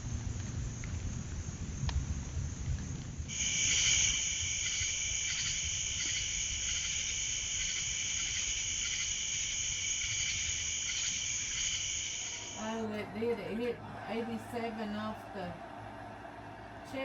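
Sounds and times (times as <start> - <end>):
shrill insect chorus: 3.3 - 12.9.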